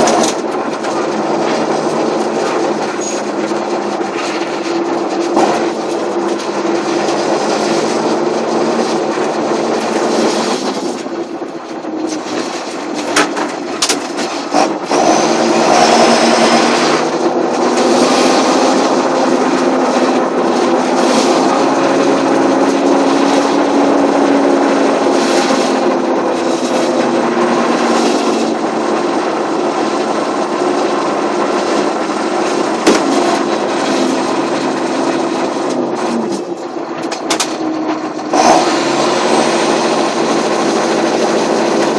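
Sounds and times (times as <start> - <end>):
diesel tractor engine running: 0.0 - 41.9.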